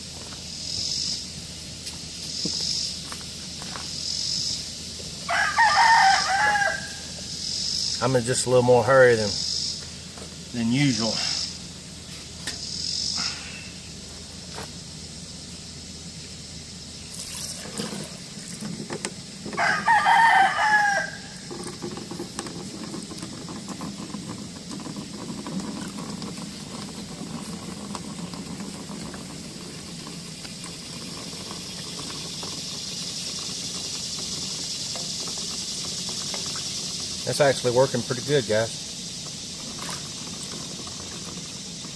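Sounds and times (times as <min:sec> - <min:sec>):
crickets and insects chirring: 0:00.0 - 0:41.9
rooster crowing: 0:05.2 - 0:07.2, 0:19.5 - 0:21.5.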